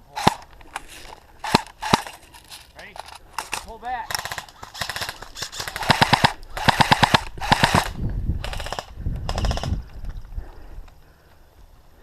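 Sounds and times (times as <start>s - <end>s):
airsoft rifle bursts: 3.0s - 9.7s.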